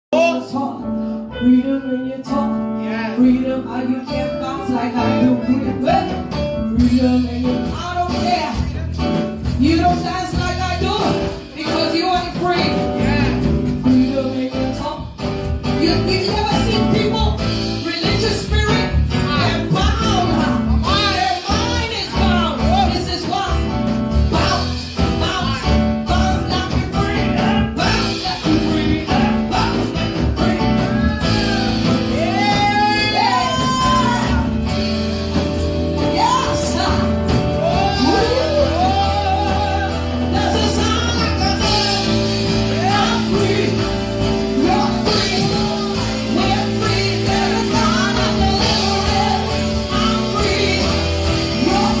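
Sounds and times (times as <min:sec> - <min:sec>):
voices singing: 0:36.0 - 0:52.0.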